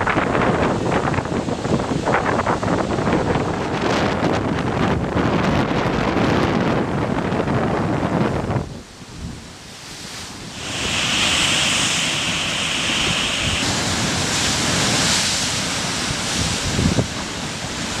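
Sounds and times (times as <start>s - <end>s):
wind on microphone: 0.0s - 18.0s
ocean wave breaking: 9.0s - 18.0s.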